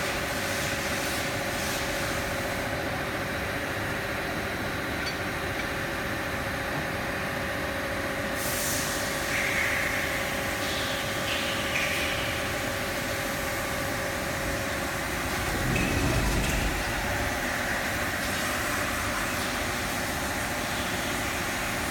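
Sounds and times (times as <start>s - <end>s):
hiss: 8.4s - 10.1s
grinding machine humming: 14.1s - 19.0s
low rumble: 14.5s - 18.6s.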